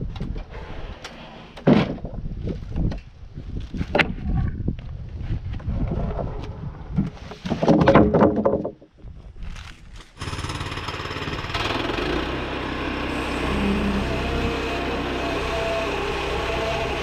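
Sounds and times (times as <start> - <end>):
small gasoline engine running: 10.2 - 17.0.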